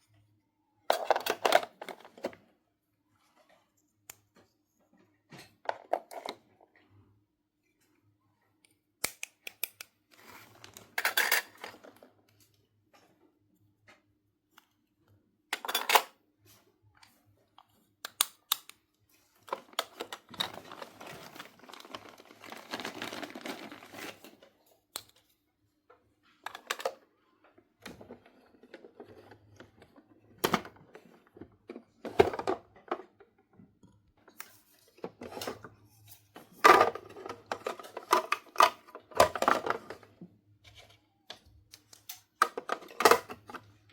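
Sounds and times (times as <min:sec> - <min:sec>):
packaging rustling and tearing: 0:19.5 - 0:24.4.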